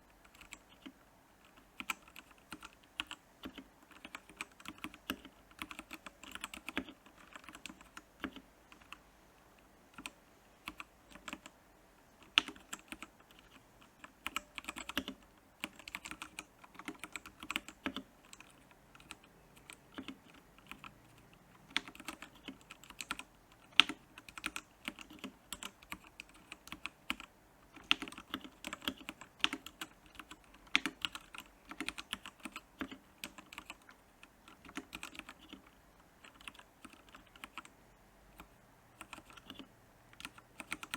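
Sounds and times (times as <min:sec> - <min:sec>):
mechanical keyboard keystroke clicks: 0:12.2 - 0:37.7, 0:38.4 - 0:40.9.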